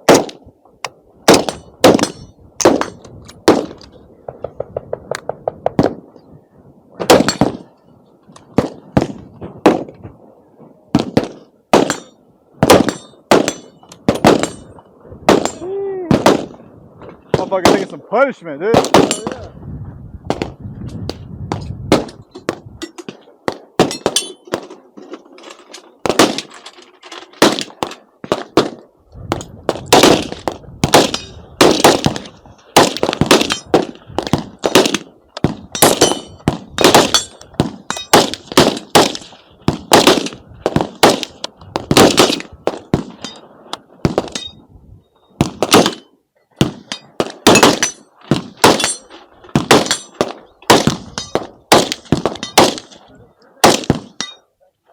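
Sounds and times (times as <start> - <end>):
gunshots: 0.0 - 0.4, 1.3 - 6.0, 7.0 - 7.7, 8.5 - 10.0, 10.9 - 14.7, 15.3 - 16.6, 17.3 - 18.0, 18.6 - 19.5, 20.3 - 20.6, 21.5 - 22.6, 23.4 - 24.7, 26.0 - 26.5, 27.4 - 43.3, 44.0 - 44.4, 45.4 - 53.0, 53.6 - 54.3.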